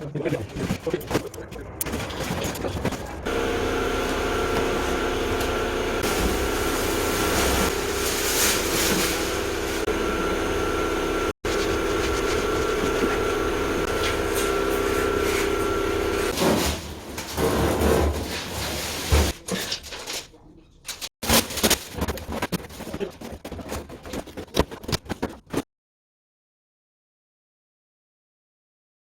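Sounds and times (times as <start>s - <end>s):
machine drone with held tones: 9.0s - 16.3s.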